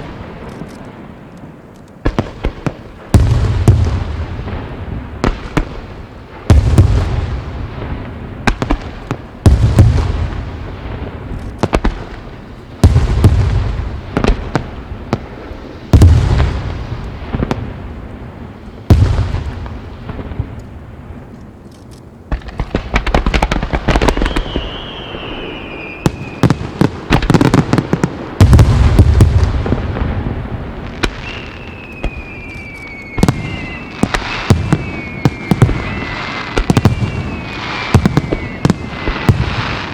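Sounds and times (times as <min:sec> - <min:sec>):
firework crackling: 0:00.0 - 0:39.9
firework shells booming: 0:02.0 - 0:21.3, 0:22.3 - 0:39.9
falling firework whistles: 0:22.4 - 0:39.9.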